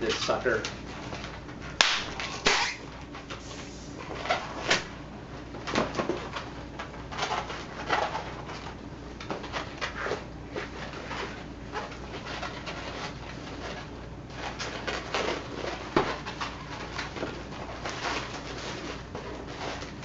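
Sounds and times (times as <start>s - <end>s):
balloons squeaking and rubbing: 2.2s - 2.9s.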